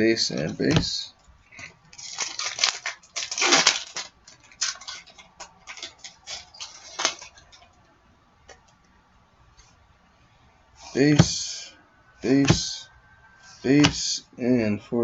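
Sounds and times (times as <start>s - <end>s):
foil wrappers crinkling: 1.9s - 7.7s.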